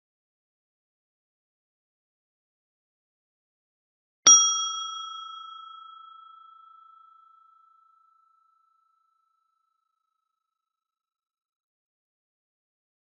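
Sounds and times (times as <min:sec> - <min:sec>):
small brass bell ringing: 0:04.3 - 0:08.7.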